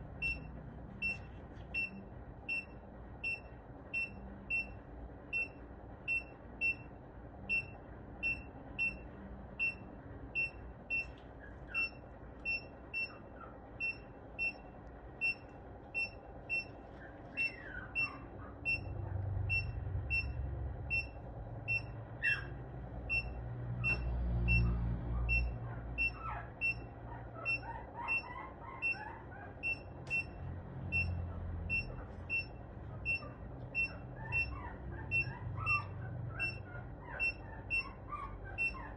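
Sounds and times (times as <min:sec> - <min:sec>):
high-pitched monitor beeping: 0:00.2 - 0:22.4, 0:23.1 - 0:24.7, 0:25.3 - 0:38.0, 0:38.6 - 0:38.9.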